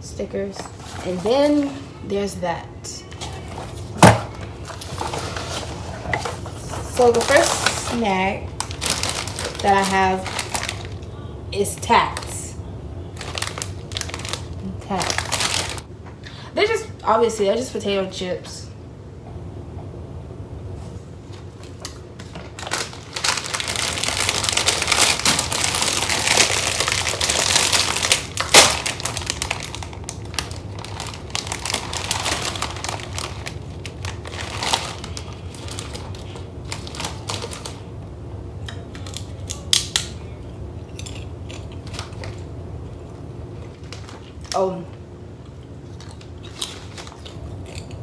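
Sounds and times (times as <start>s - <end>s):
plastic chip bag crinkling: 3.0s - 12.4s, 13.1s - 15.9s, 21.4s - 37.9s, 38.6s - 42.6s, 43.5s - 44.8s, 45.4s - 48.0s
bag snapping open: 21.8s - 33.6s.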